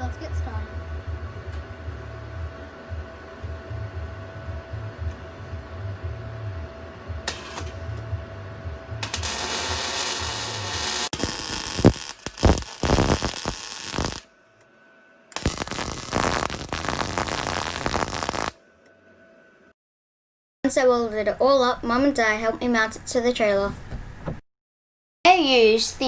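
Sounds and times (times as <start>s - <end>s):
welding arc crackling: 7.3s - 8.0s, 9.0s - 14.2s, 15.4s - 18.6s.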